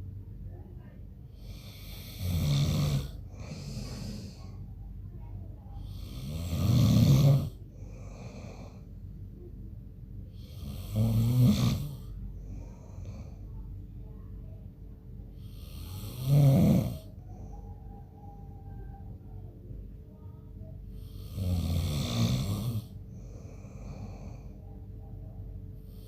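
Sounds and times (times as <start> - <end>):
soft breathing: 0.5 - 26.0
man snoring: 1.4 - 4.4, 5.9 - 8.8, 10.4 - 12.0, 15.5 - 17.1, 21.2 - 24.5.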